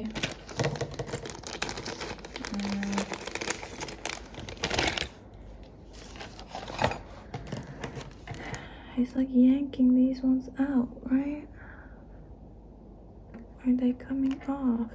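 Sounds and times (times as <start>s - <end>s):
crinkly rustling: 0.0s - 8.6s.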